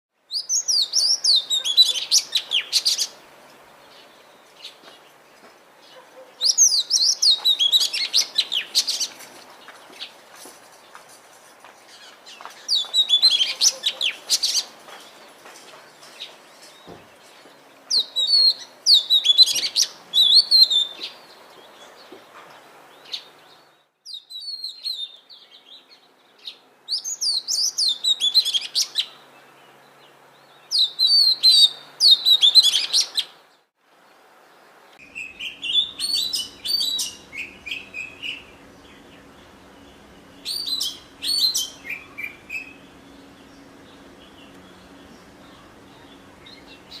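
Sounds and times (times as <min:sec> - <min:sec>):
bird singing whistled phrases: 0:00.3 - 0:03.1, 0:06.4 - 0:09.0, 0:12.7 - 0:14.6, 0:17.9 - 0:21.1, 0:24.1 - 0:25.2, 0:26.9 - 0:29.1, 0:30.7 - 0:33.3, 0:35.1 - 0:38.5, 0:40.4 - 0:42.8.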